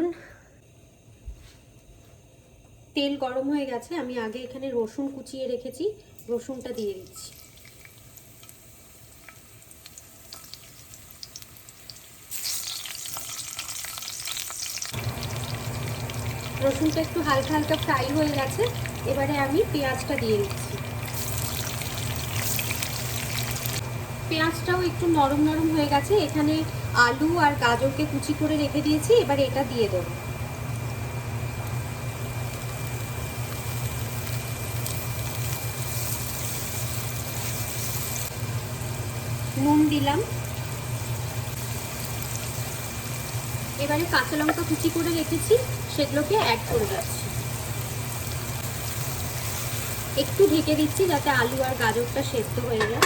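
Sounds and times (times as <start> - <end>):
garlic sizzling in hot oil: 3.4 - 53.0
steady low hum: 14.9 - 53.0.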